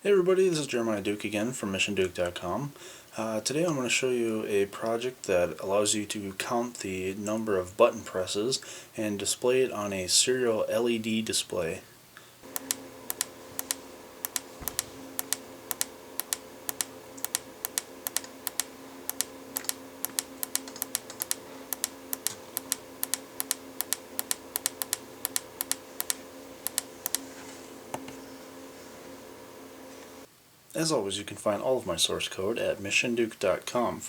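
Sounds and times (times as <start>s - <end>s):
steady hum: 12.4s - 32.5s
pushbutton clicks: 12.5s - 27.2s.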